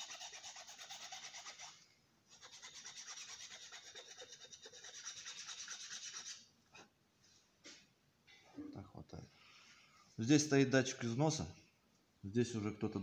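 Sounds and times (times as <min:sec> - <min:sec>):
hand file rasping: 0:00.0 - 0:06.4.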